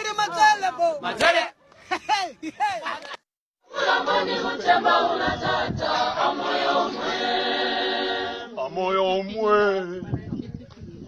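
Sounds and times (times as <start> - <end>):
choir singing unaccompanied: 3.6 - 8.6.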